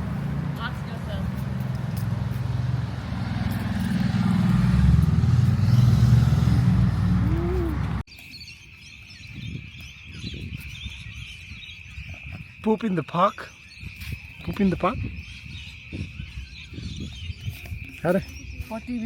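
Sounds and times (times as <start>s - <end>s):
vehicle engine rumbling: 0.0s - 8.1s.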